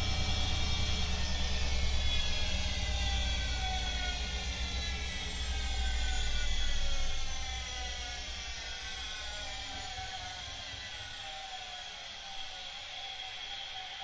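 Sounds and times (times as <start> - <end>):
washing machine spin whine: 0.0 - 14.0.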